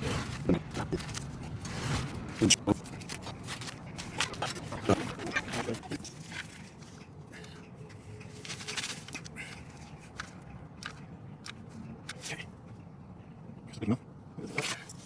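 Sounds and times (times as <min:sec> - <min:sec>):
short irregular scrapes: 0:00.0 - 0:06.6
faint steady background noise: 0:00.0 - 0:15.0.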